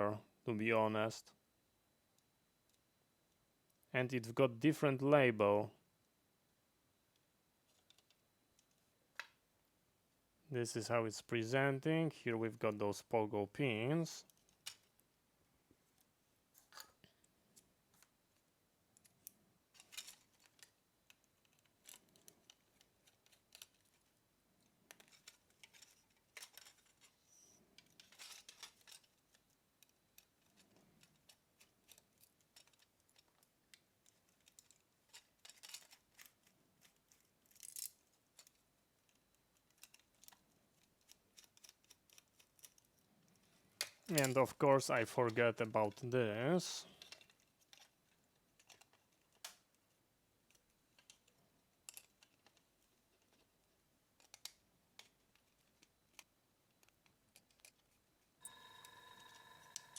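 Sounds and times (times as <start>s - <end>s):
small parts and tools clicking: 7.1s - 9.4s, 14.2s - 15.1s, 15.8s - 44.5s, 46.8s - 59.9s.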